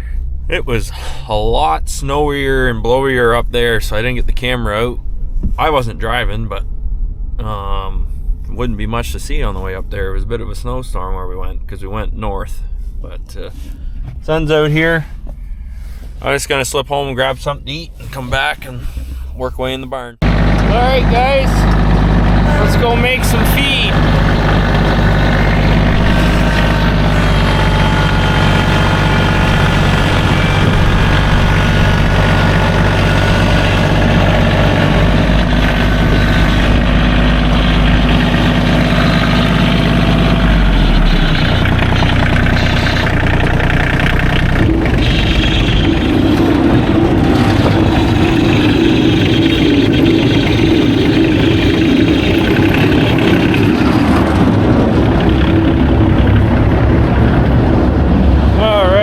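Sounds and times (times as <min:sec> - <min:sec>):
droning hum: 0:00.0 - 0:59.0
engine running: 0:12.6 - 0:59.0.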